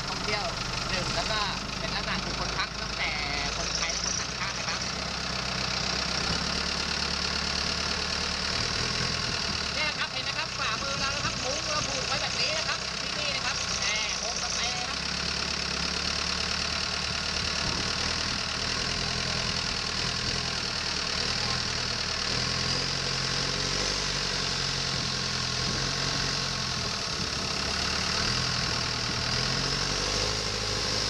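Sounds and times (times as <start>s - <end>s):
boat engine running: 0.0s - 31.0s.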